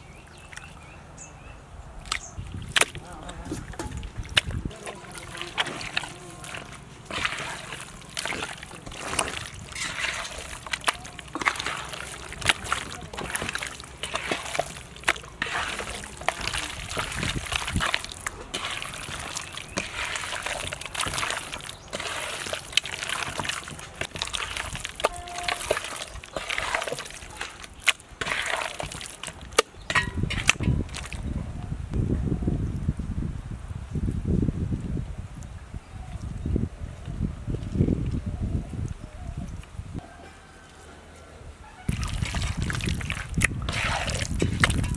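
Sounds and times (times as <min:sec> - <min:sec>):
water sloshing and splashing: 0:02.0 - 0:31.4, 0:41.8 - 0:44.9.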